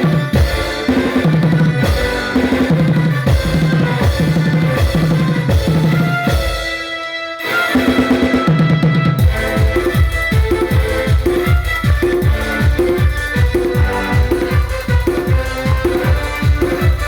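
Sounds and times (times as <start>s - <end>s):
pitched backing music: 0.0s - 17.0s
snare drum: 0.0s - 17.0s
deep bass kick drum: 9.2s - 17.0s.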